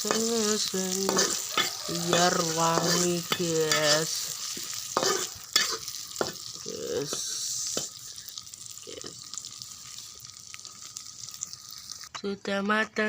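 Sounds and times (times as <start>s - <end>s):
spatula scraping a pan: 0.0s - 6.5s
food sizzling in oil: 0.0s - 13.0s.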